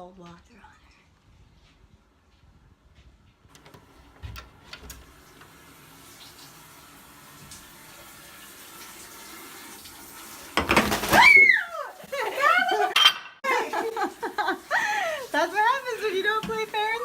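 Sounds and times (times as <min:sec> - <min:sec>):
water running from a tap: 0:05.0 - 0:17.0.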